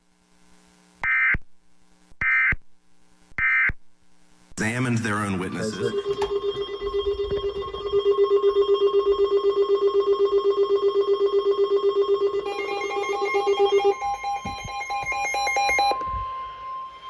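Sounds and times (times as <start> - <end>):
electronic beeping pattern: 4.6 - 9.4, 11.9 - 16.0
steady high alert tone: 4.6 - 17.0
low pulsing alert tone: 5.4 - 9.4.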